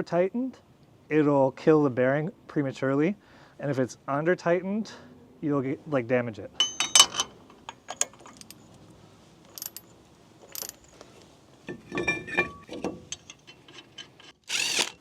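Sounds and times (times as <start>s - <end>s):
ringing metal clinks: 6.6s - 8.6s, 9.6s - 9.9s, 10.5s - 11.0s
torque wrench ratcheting: 13.2s - 15.0s.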